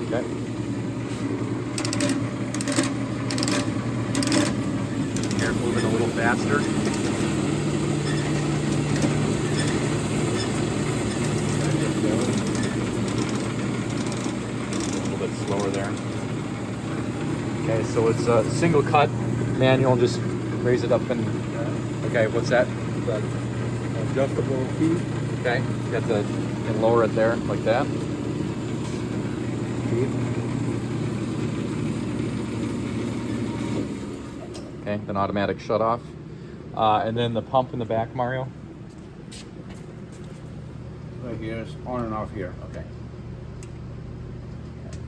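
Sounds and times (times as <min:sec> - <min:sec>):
bandsaw running: 0:00.0 - 0:34.4.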